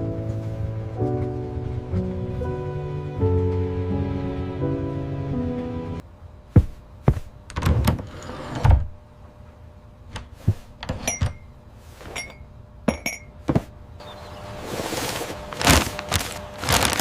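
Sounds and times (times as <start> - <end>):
gentle music: 0.0 - 6.0
knocks and thumps: 6.5 - 8.1, 12.9 - 13.8.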